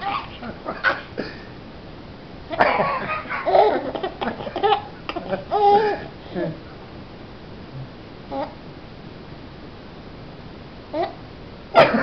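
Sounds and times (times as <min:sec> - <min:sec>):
young child laughing and babbling: 0:00.0 - 0:00.6, 0:08.3 - 0:08.6, 0:10.9 - 0:11.2.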